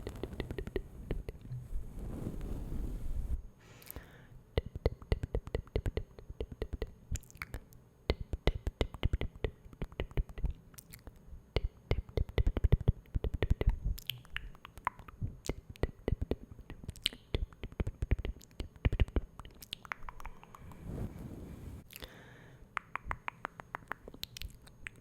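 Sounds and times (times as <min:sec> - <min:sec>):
soft hiss: 0:00.0 - 0:25.0
wet mouth clicks and smacks: 0:04.6 - 0:20.8, 0:21.9 - 0:22.1, 0:22.8 - 0:25.0.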